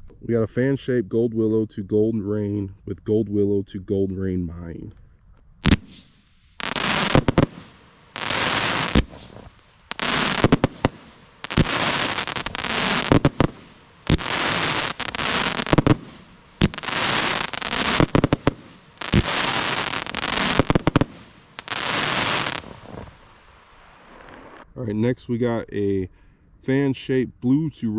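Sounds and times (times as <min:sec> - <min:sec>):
firework sharp crack: 0:05.6 - 0:24.6
firework shots hissing with pops: 0:05.6 - 0:24.6.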